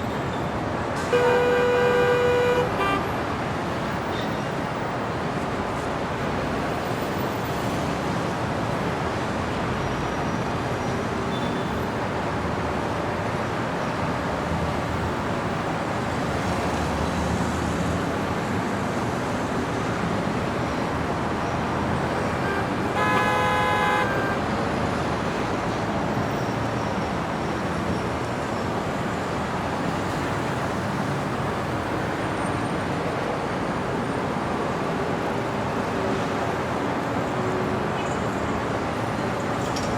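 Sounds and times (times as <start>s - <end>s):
city street traffic: 0.0s - 39.9s
car horn honk: 1.1s - 3.1s, 22.2s - 24.4s.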